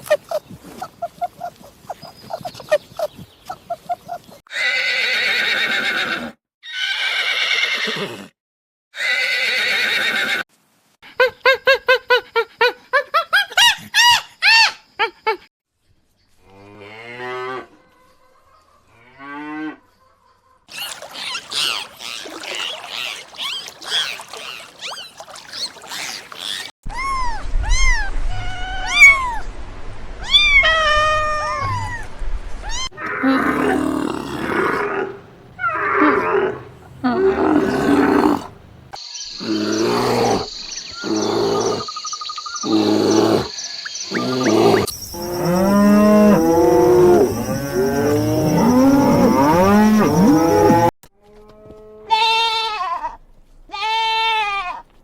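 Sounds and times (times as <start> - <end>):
animal calls: 20.7 - 29.4, 32.7 - 50.9.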